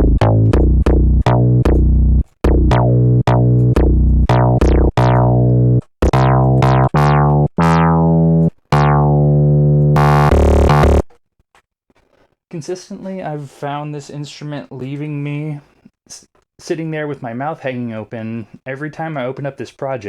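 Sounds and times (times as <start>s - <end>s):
heavy low synthesizer notes: 0.0s - 11.1s.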